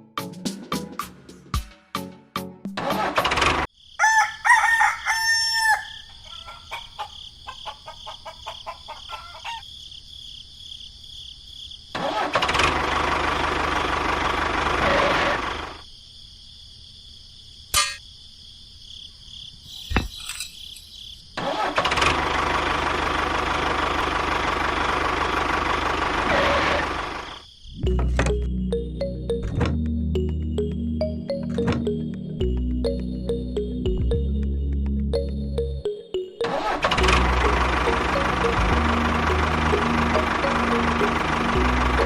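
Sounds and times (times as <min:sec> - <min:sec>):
rooster crowing: 0:04.0 - 0:09.7
steady machine noise: 0:36.6 - 0:42.0.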